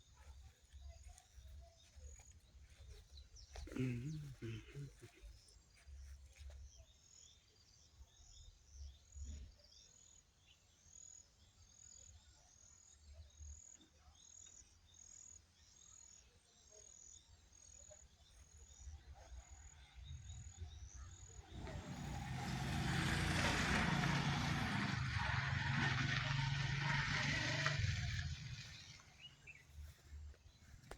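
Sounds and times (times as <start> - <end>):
motor vehicle approaching: 20.1 - 30.9.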